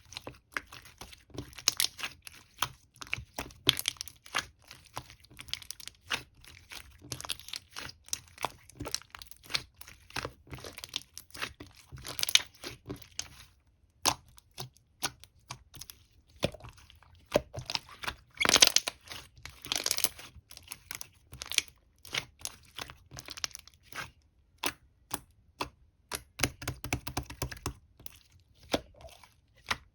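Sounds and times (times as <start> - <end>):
slime squished by hand: 0.0 - 29.9.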